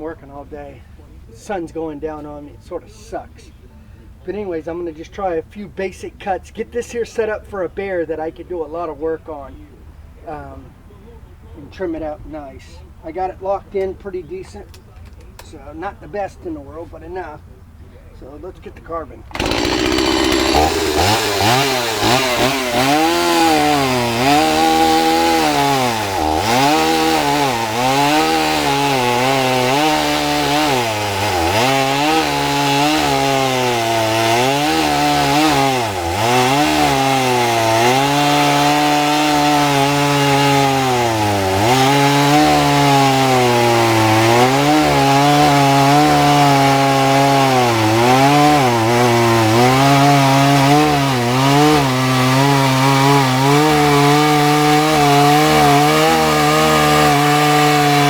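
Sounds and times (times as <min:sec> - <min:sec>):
chainsaw cutting into wood: 0:19.3 - 0:58.0.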